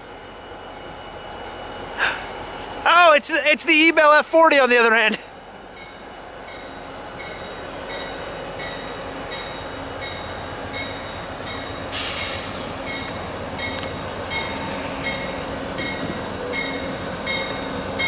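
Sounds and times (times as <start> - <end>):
rumble of moving train: 0.0 - 2.9, 5.3 - 18.0
locomotive bell ringing: 5.8 - 12.1
short hiss: 11.9 - 12.8.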